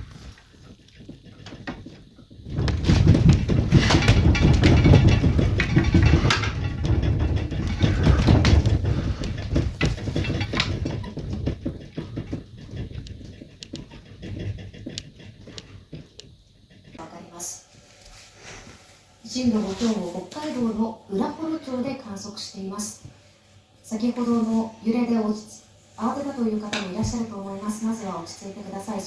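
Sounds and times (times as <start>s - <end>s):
deep earthquake rumble: 0.0s - 17.0s
loose objects rattling: 0.0s - 17.1s.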